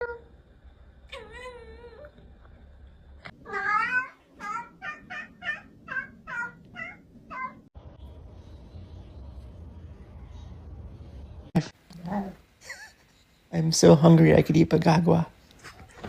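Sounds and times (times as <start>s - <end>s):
cat meowing: 3.4s - 7.6s.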